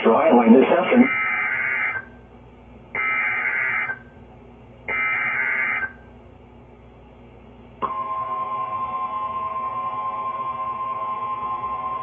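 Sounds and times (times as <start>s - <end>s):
steady warning alarm tone: 1.0s - 2.2s, 3.0s - 4.2s, 4.9s - 6.1s.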